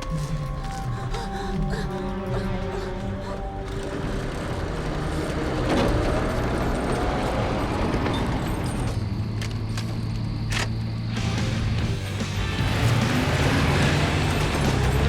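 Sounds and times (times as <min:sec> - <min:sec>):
motor vehicle passing: 0:02.2 - 0:09.0.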